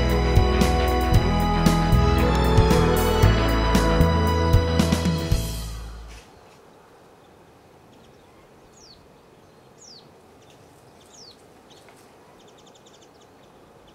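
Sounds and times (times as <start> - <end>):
faint outdoor ambience: 0.0 - 13.9
small bird calling: 6.1 - 13.9.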